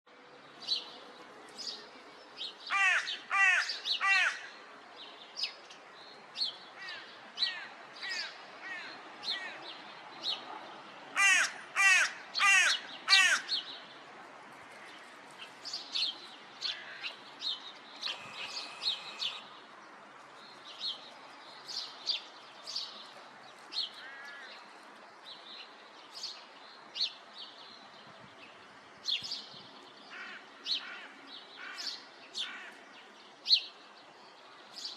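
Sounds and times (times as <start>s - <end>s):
crow cawing: 2.7s - 4.5s, 11.2s - 13.5s
small birds chirping: 15.0s - 34.9s.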